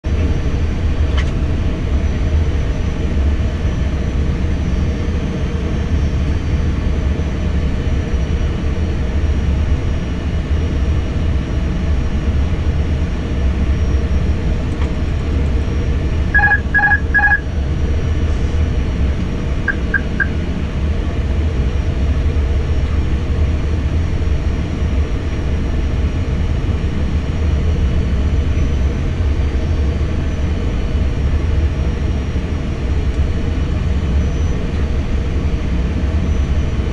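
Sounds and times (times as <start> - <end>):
airflow and engine noise: 0.0 - 36.9
electronic beeps: 16.4 - 17.5, 19.6 - 20.4
quick short beeps: 19.7 - 20.4.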